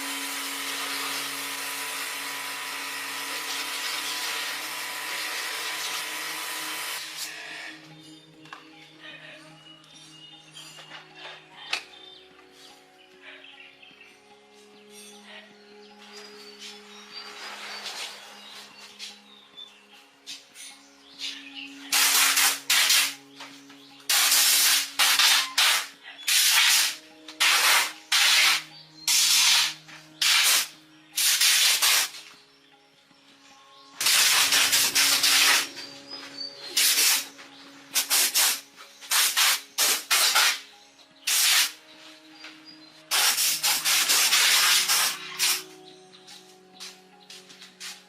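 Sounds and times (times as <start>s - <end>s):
hissing noise bursts: 21.9s - 23.2s, 24.1s - 32.2s, 34.0s - 35.8s, 38.0s - 40.6s, 41.3s - 41.8s, 43.1s - 45.7s.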